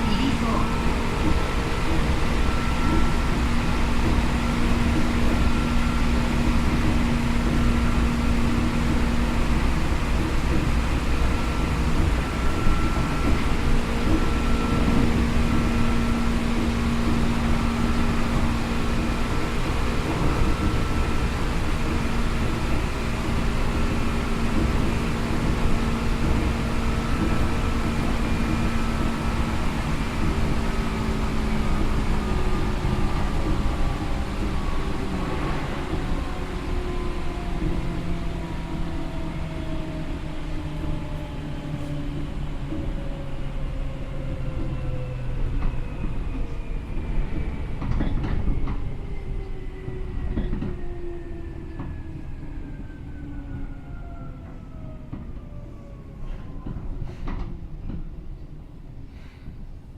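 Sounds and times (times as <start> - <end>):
train wheels rumbling on rail: 0.0 - 59.9
clicks from rail joints: 56.2 - 58.6.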